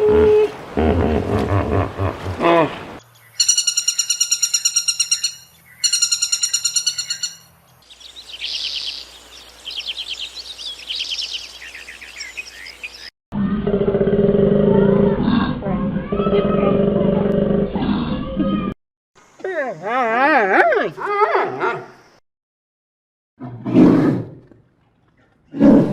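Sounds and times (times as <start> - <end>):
birds chirping and twittering: 3.0 - 13.2
bird trilling: 3.2 - 13.1.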